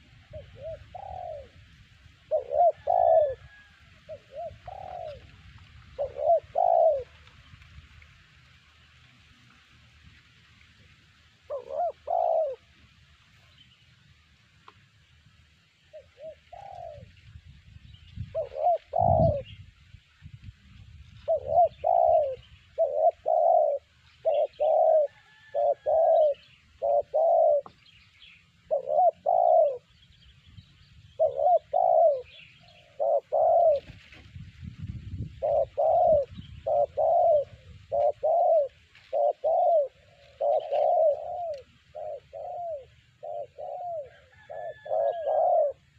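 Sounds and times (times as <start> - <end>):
dove cooing: 0.0 - 7.6, 11.3 - 12.9, 15.9 - 17.4, 18.2 - 19.7, 21.1 - 30.0, 31.1 - 34.4, 35.0 - 45.9
small birds chirping: 35.2 - 45.8.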